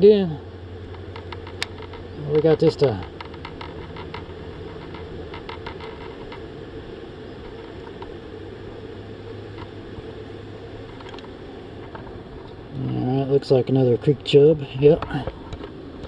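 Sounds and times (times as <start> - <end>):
faint ticks: 0.9 - 6.5.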